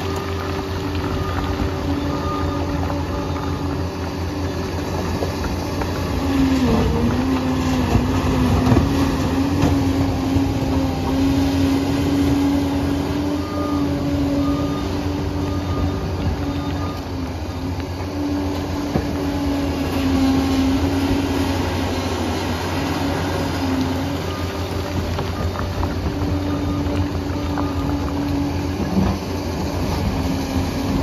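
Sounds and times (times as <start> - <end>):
diesel engine rumble: 0.0 - 31.0
track clatter: 23.7 - 31.0.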